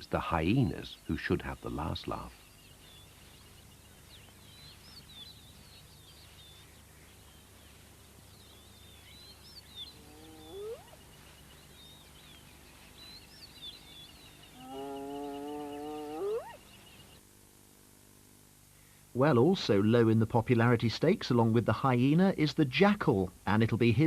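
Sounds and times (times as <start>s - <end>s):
birds chirping: 0.0s - 17.2s.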